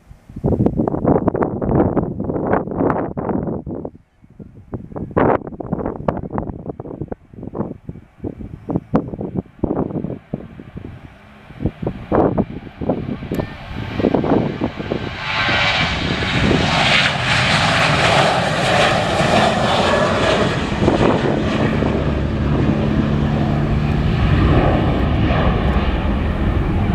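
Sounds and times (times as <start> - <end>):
wind buffeting microphone: 0.0 - 26.9
jet engines roaring: 5.6 - 26.9
low steady hum: 7.2 - 16.4.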